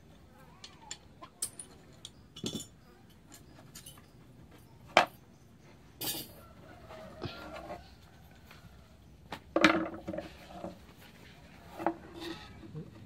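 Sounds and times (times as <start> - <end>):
light knocks and clinks: 0.6 - 6.5.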